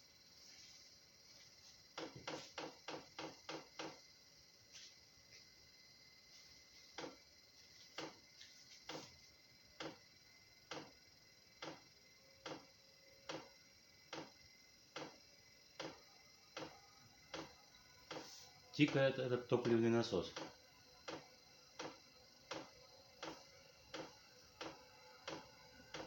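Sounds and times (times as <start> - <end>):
fuel pump ticking steadily: 11.6 - 11.8, 14.1 - 15.2.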